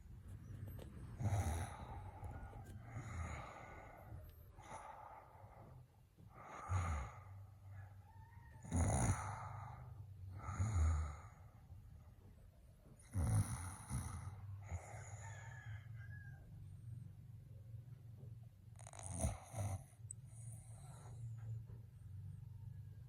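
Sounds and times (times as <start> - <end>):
person snoring: 1.2 - 5.3, 6.3 - 7.5, 8.6 - 11.5, 13.0 - 15.2, 18.8 - 21.2.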